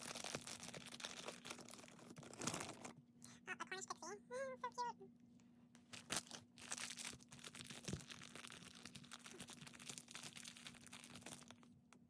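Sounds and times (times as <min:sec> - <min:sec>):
plastic packaging crinkling and tearing: 0:00.0 - 0:03.0, 0:05.8 - 0:11.6.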